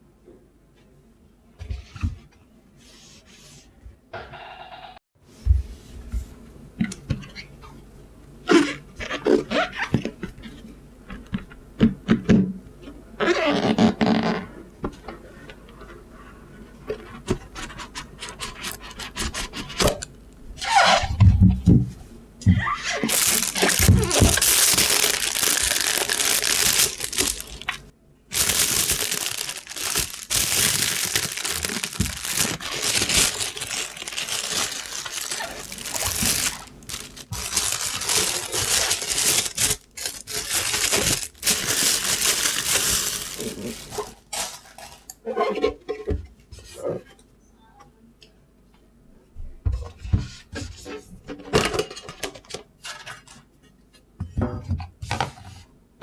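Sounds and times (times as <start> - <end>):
wrapping crinkling and tearing: 23.0 - 45.1
packaging clicks and knocks: 23.1 - 43.9.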